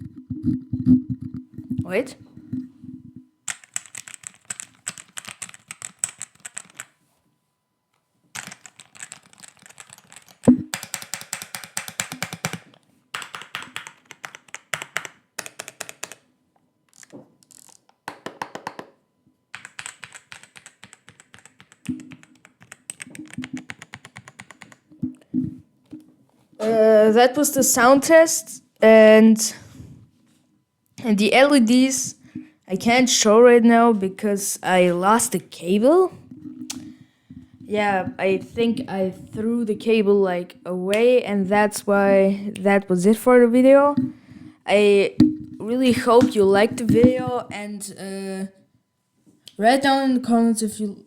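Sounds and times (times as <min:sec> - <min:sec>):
keyboard key clicks: 0:08.4 - 0:16.2.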